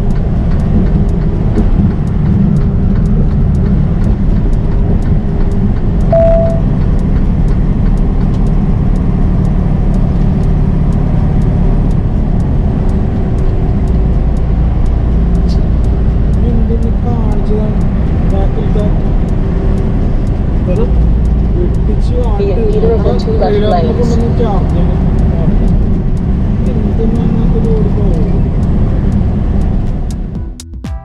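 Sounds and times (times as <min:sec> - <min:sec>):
faint ticking: 0:00.0 - 0:30.6
truck engine and road drone: 0:00.0 - 0:30.7
short beep: 0:06.1 - 0:06.7.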